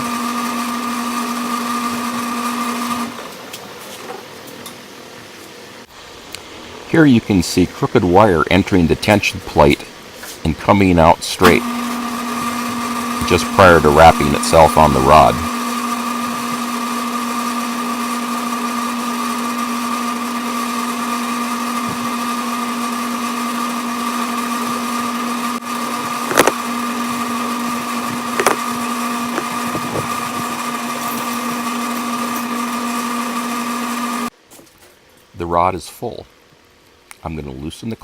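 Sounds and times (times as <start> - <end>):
lathe motor whine: 0.0 - 3.6, 11.4 - 34.3.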